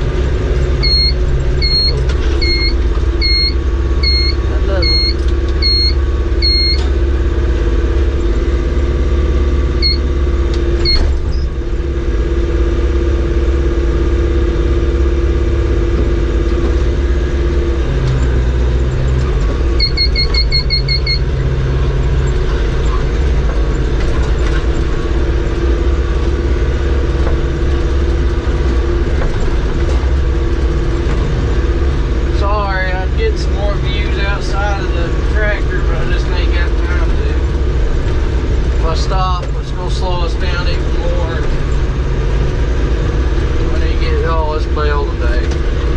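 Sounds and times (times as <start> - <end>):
tractor engine running: 0.0 - 45.9
short electronic beeps: 0.8 - 6.9, 9.8 - 10.1, 10.8 - 11.5, 19.8 - 21.3.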